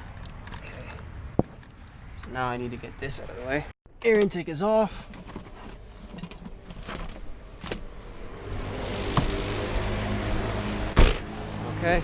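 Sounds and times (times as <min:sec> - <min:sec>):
vehicle engine drone: 0:05.9 - 0:12.0.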